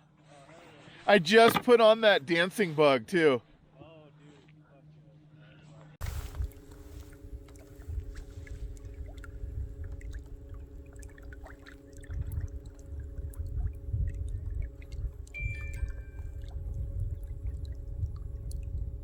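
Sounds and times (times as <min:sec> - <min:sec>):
boat motor humming: 0:06.0 - 0:19.0
small water splashes: 0:06.0 - 0:19.0
wind rumbling on microphone: 0:06.0 - 0:19.0.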